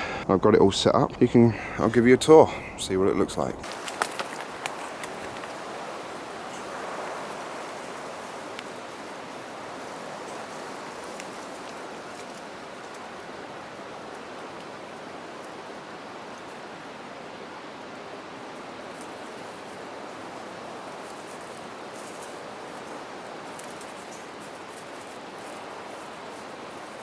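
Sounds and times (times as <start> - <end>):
steady rushing noise: 1.2 - 13.7
faint clicks: 3.6 - 8.9.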